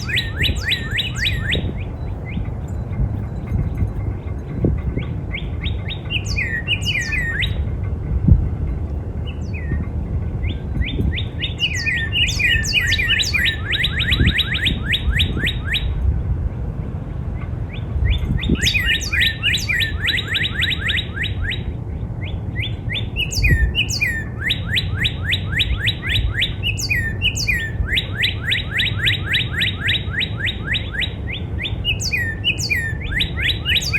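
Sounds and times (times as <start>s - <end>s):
bird whistling and trilling: 0.0s - 2.4s, 5.3s - 7.6s, 10.4s - 16.0s, 17.7s - 33.9s.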